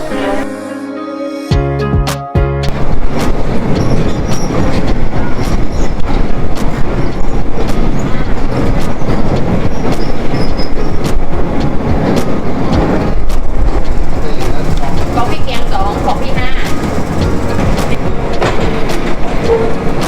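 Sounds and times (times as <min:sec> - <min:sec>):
train wheels rumbling: 0:02.7 - 0:20.0
wheels clacking over rail joints: 0:02.7 - 0:20.0
faint wheel squeaks: 0:07.0 - 0:11.1.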